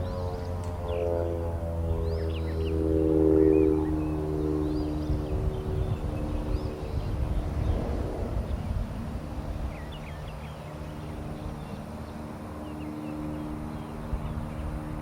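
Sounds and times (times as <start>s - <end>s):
low rumbling: 0.0s - 11.9s
low mechanical hum: 0.0s - 15.0s.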